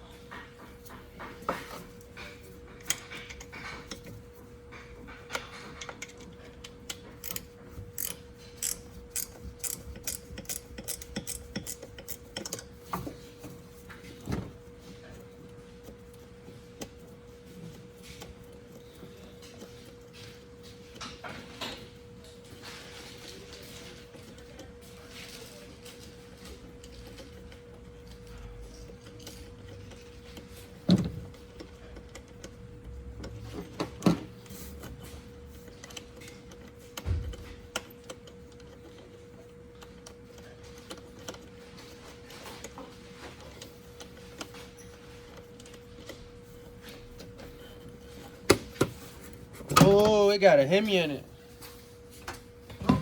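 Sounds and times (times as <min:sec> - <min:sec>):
tools clinking and knocking: 0:00.0 - 0:14.4
hand ratchet clicking: 0:02.8 - 0:04.2, 0:04.8 - 0:12.7.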